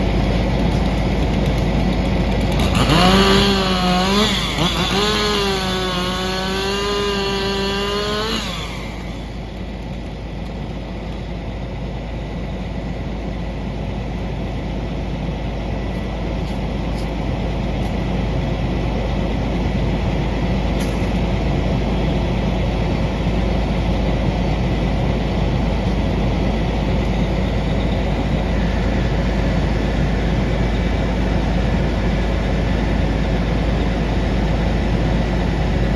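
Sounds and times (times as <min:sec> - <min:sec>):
chainsaw revving and cutting: 0:00.0 - 0:11.2
machinery engine rumble: 0:00.0 - 0:35.9.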